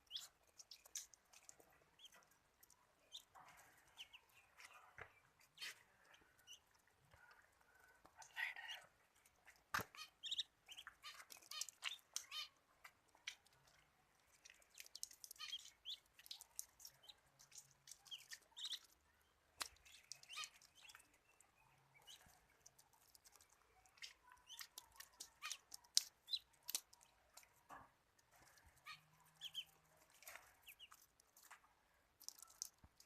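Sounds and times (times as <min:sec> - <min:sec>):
ducklings peeping: 0:00.0 - 0:02.2, 0:03.0 - 0:06.8, 0:09.8 - 0:12.5, 0:14.7 - 0:19.0, 0:19.6 - 0:21.2, 0:21.9 - 0:27.0, 0:28.8 - 0:29.8, 0:30.6 - 0:31.0.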